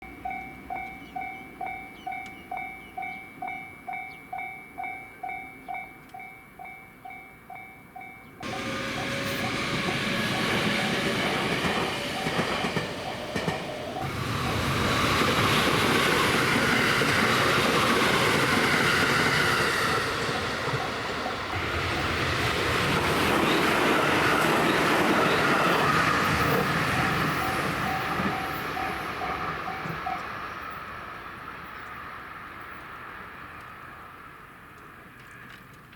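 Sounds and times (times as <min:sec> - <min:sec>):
railroad crossing bell clanging: 0:00.0 - 0:30.8
train wheel clatter: 0:08.4 - 0:30.4
electric train rushing past: 0:08.4 - 0:34.3.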